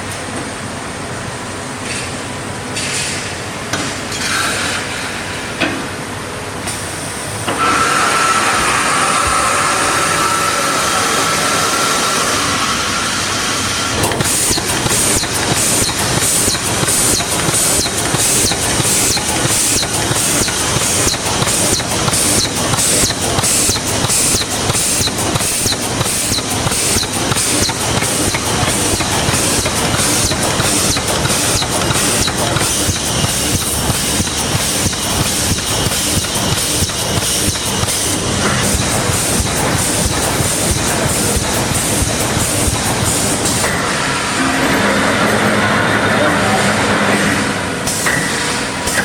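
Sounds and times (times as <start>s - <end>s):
loud industrial noise: 0.0s - 49.0s
machine whine: 6.7s - 49.0s
welding machine clatter: 13.0s - 44.2s.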